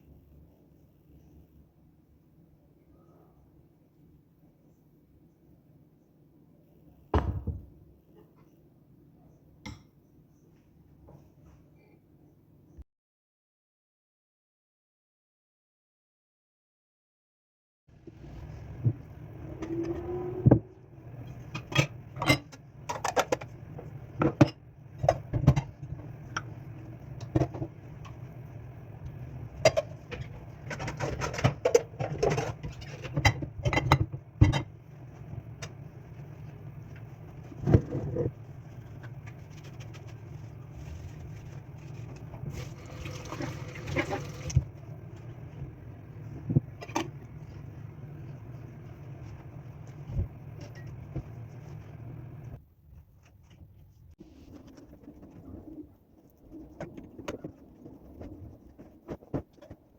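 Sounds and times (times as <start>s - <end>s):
steady low hum: 18.0s - 52.8s.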